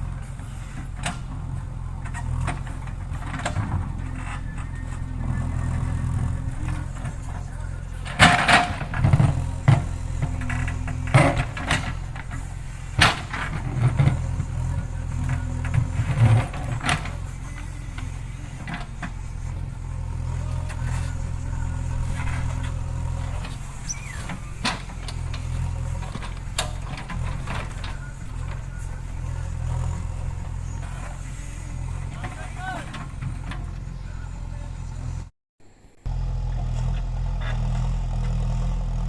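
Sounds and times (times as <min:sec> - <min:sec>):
diesel engine running: 0:00.0 - 0:39.0.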